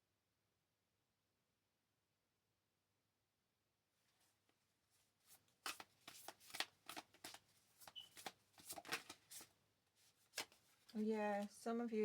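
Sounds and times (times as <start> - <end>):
cards being shuffled: 5.3 - 11.5.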